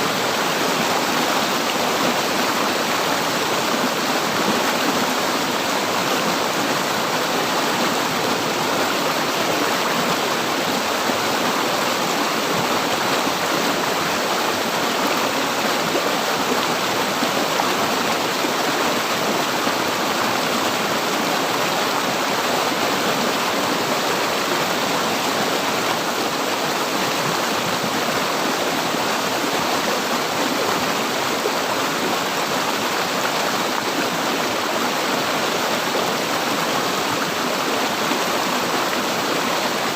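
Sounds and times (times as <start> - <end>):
river water flowing over rocks: 0.0 - 39.9.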